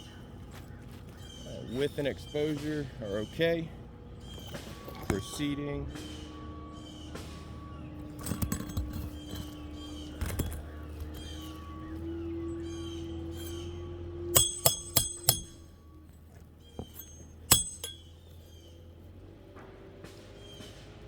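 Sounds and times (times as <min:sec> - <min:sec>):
hatchet striking roofing nails: 0:14.4 - 0:15.7, 0:16.8 - 0:18.1.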